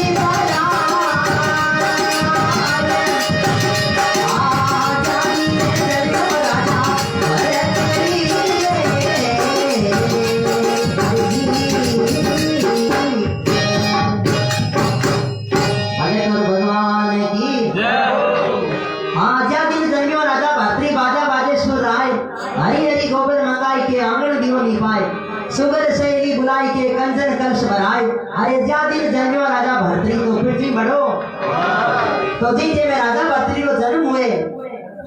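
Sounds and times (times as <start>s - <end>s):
hand drum beat: 0.0s - 16.0s
jingling hand cymbals: 0.0s - 16.4s
folk devotional music: 0.0s - 21.2s.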